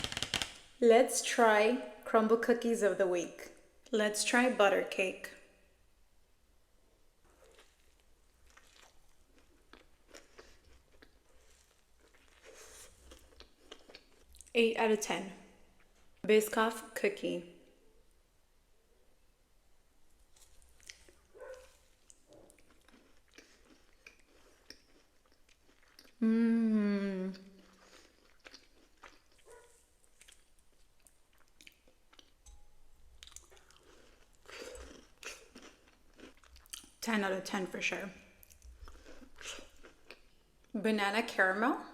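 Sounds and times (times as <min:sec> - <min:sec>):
faint chewing with mouth clicks: 0:07.2 - 0:14.6, 0:20.3 - 0:26.2, 0:27.3 - 0:37.0, 0:38.4 - 0:40.7.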